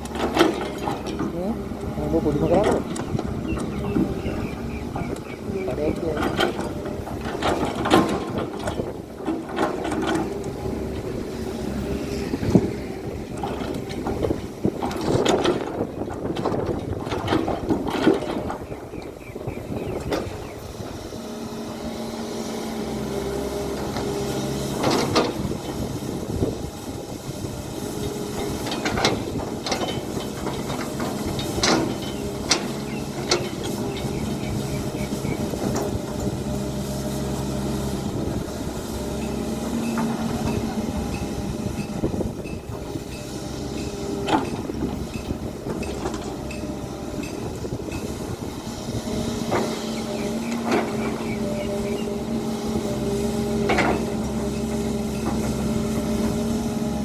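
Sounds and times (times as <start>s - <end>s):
metallic clanks and knocks: 0.0s - 1.4s, 5.9s - 10.6s, 13.3s - 19.1s, 28.3s - 36.4s, 39.2s - 48.3s, 53.6s - 54.4s
excavator diesel engine running: 0.0s - 57.0s.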